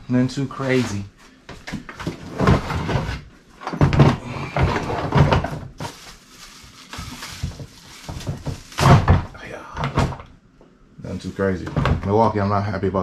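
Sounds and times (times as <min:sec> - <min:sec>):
plastic tool boxes knocking: 0:01.6 - 0:05.8.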